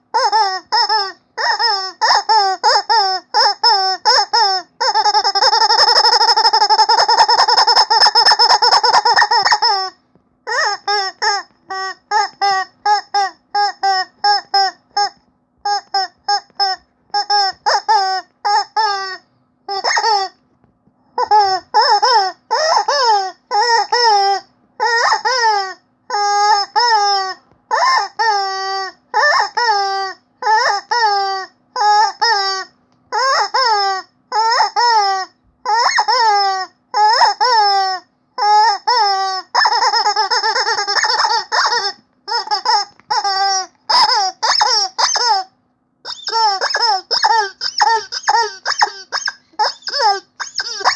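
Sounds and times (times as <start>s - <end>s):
rubber chicken squeaky toy: 0.0s - 20.4s, 21.1s - 50.9s.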